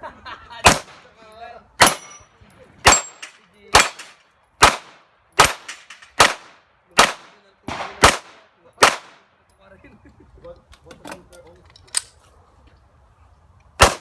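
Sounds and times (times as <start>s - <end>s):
pistol shots: 0.6s - 1.1s, 1.8s - 2.2s, 2.8s - 9.3s, 13.8s - 14.0s.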